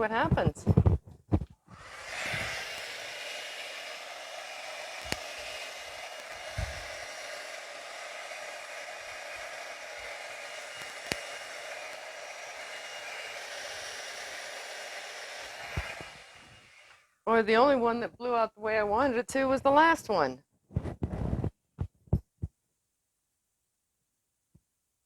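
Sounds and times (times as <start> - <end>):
hair dryer running: 0.7 - 17.1.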